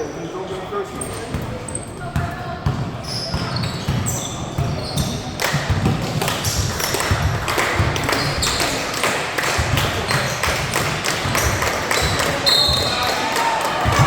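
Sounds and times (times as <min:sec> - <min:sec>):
crowd noise: 0:00.0 - 0:14.0
sneakers squeaking: 0:00.5 - 0:09.0, 0:09.6 - 0:14.0
basketball bouncing on floor: 0:02.2 - 0:08.8, 0:09.6 - 0:13.0.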